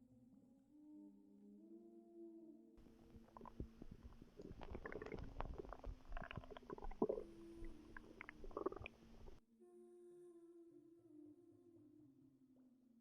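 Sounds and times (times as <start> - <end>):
stomach gurgling: 2.8 - 9.4.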